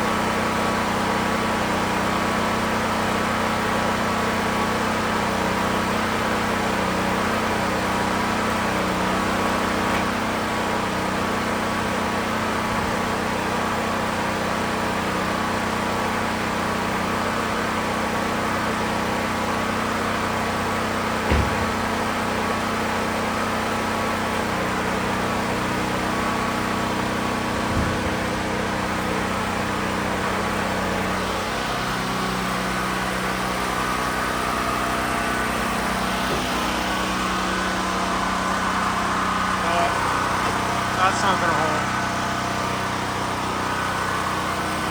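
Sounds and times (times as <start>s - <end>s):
engine-like hum: 0.0s - 44.9s
short sharp knocks: 21.2s - 21.9s.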